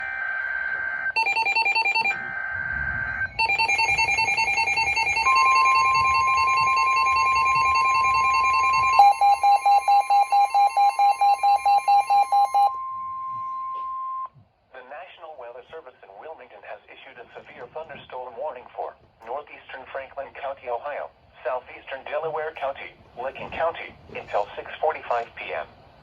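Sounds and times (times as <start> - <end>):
screechy data bursts: 0.0 - 12.7
repeating electronic beep alarm: 0.0 - 14.3
steady warning tone: 0.0 - 14.4
fast pulsing beep: 1.1 - 14.3.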